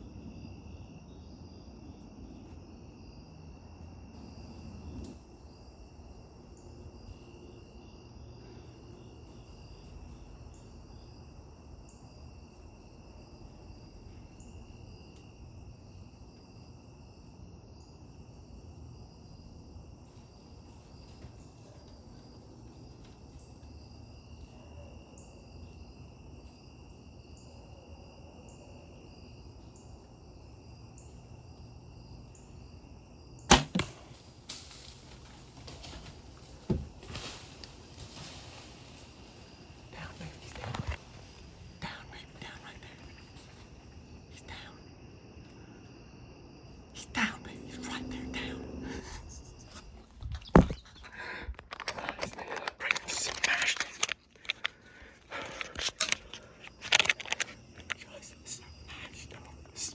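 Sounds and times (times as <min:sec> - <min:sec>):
crickets and insects trilling: 0:00.0 - 0:59.9
sharp crack of bow shot: 0:33.5 - 0:34.7
quiet thumps: 0:35.6 - 0:38.6, 0:49.0 - 0:52.6.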